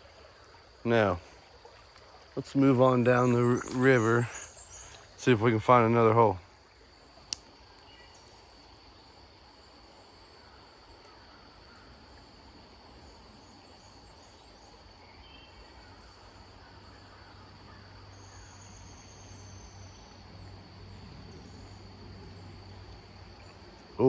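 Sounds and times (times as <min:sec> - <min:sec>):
faint outdoor background noise: 0:00.0 - 0:24.0
insects trilling: 0:00.0 - 0:24.0.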